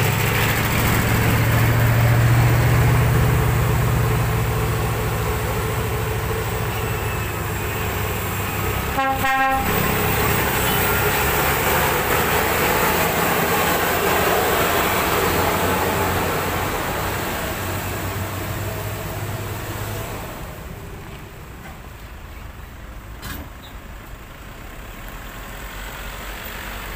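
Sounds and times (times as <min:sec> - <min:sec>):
diesel truck engine running: 0:00.0 - 0:26.9
truck passing by: 0:00.0 - 0:26.9
truck horn blast: 0:08.7 - 0:10.9.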